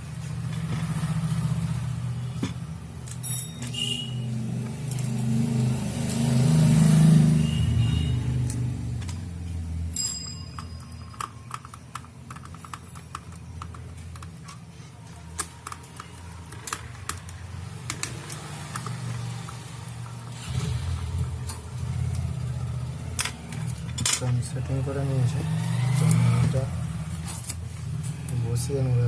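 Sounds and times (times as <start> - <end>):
plastic parts clicking: 10.6 - 19.6.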